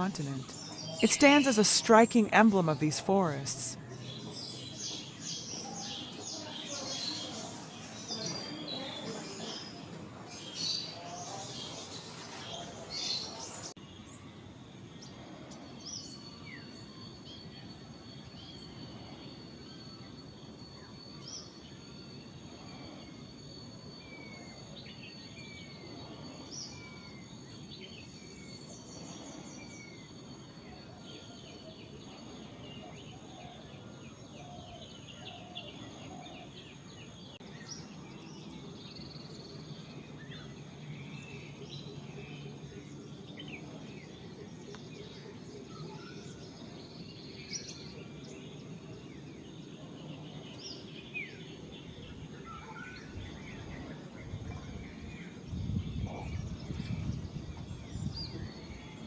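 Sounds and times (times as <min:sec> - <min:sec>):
small birds chirping and whistling: 0:00.0 - 0:01.8, 0:03.8 - 0:59.0
high insect drone: 0:03.7 - 0:59.0.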